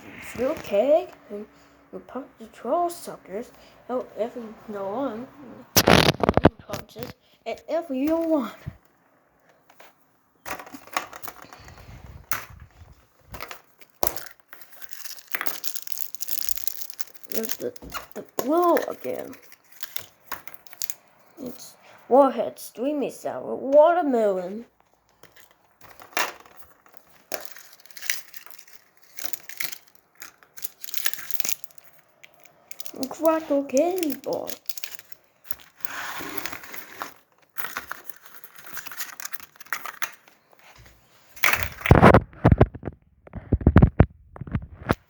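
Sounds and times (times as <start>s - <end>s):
packets clicking and rustling: 5.8s - 7.1s, 10.5s - 12.7s, 13.3s - 21.1s, 25.1s - 40.8s, 41.4s - 45.0s
plastic candy wrappers crinkling: 5.8s - 7.1s, 10.5s - 21.6s, 25.1s - 40.7s, 41.4s - 45.0s.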